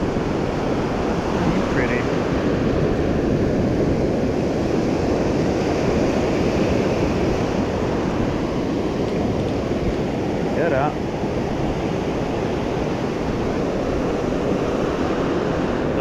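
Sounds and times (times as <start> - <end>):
ocean surf rushing: 0.0 - 16.0
wind on microphone: 0.0 - 16.0.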